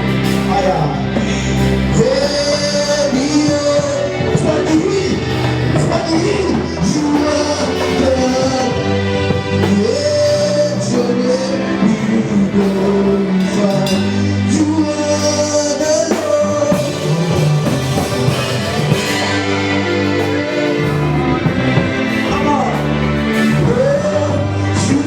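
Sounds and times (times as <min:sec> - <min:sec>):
band with steady bass line: 0:00.0 - 0:25.0
person singing long notes: 0:00.0 - 0:25.0.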